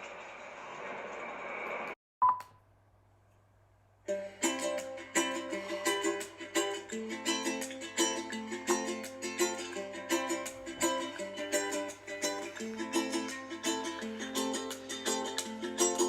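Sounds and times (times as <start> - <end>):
ukulele plucking: 4.1 - 16.0.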